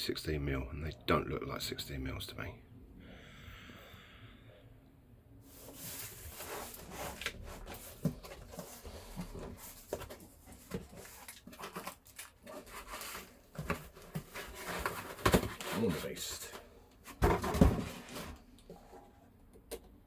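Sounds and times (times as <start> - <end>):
rustling and rubbing: 5.4 - 19.1.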